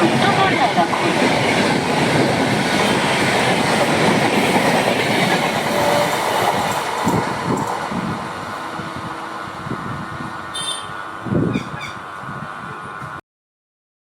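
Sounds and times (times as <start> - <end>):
train wheels clattering over joints: 0.0 - 8.0.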